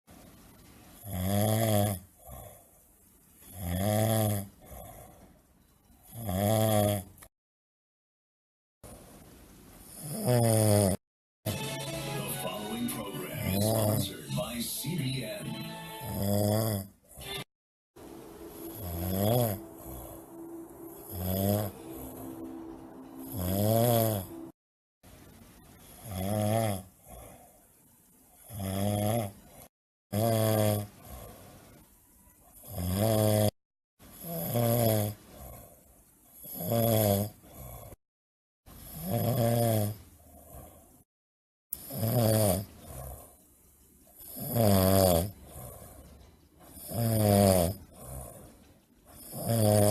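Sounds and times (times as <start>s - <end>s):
person snoring: 1.0s - 2.6s, 3.5s - 5.3s, 6.1s - 7.2s, 9.9s - 11.0s, 13.2s - 14.2s, 16.0s - 24.6s, 26.0s - 27.5s, 28.5s - 31.5s, 32.6s - 33.6s, 34.2s - 35.7s, 36.4s - 38.0s, 38.9s - 40.9s, 41.8s - 43.4s, 44.2s - 46.0s, 46.7s - 48.5s, 49.2s - 49.9s.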